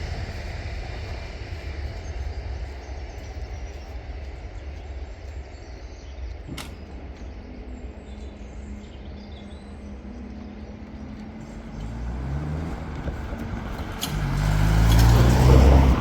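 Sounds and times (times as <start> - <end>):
cars accelerating away: 8.0 - 16.0
car passing close: 9.8 - 16.0.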